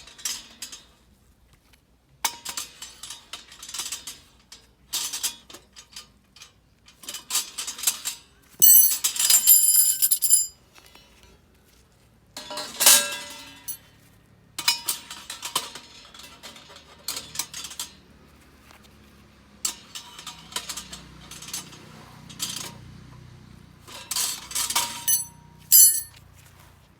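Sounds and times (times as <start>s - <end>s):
metal grill parts clanking: 24.6s - 26.1s
ringing metallic scrape: 24.9s - 26.1s.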